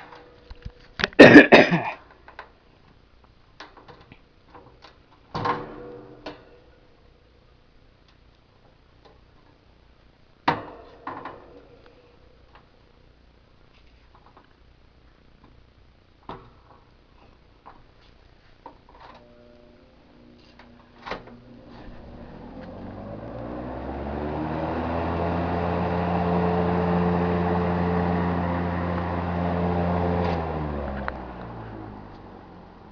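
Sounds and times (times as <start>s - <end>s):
box fan humming: 19.2s - 32.9s.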